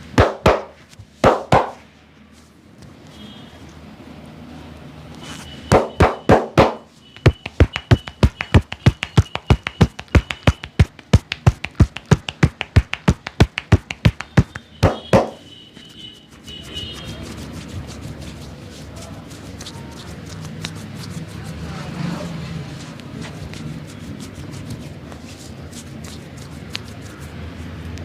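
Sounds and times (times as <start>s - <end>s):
hands slapping in massage: 0.1s - 1.8s, 5.7s - 15.4s, 23.0s - 27.1s.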